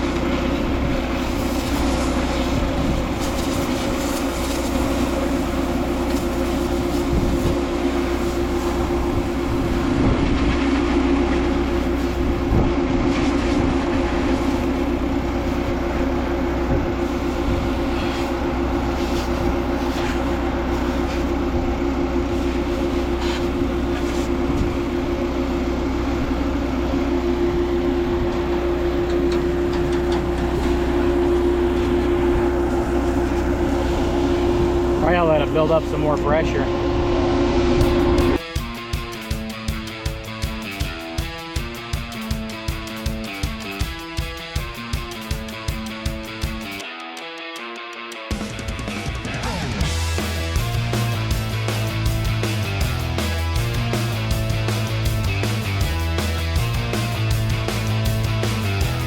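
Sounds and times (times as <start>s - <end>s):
motor humming: 0.0s - 38.4s.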